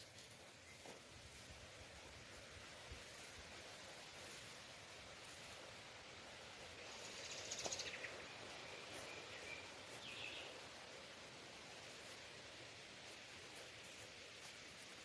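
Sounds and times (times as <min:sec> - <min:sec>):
background hiss: 0:00.0 - 0:15.0
bird chirps: 0:06.9 - 0:08.2.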